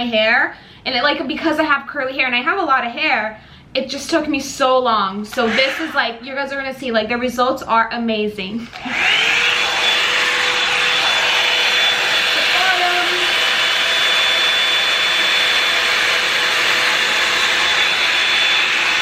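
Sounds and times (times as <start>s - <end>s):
hot-air brush whirring: 5.3s - 6.4s, 8.6s - 19.0s.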